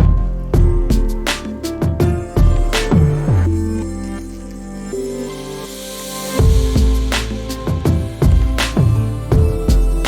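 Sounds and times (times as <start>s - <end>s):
drum hits: 0.0s - 3.4s, 6.4s - 10.0s
synth notes over deep bass: 0.0s - 10.0s.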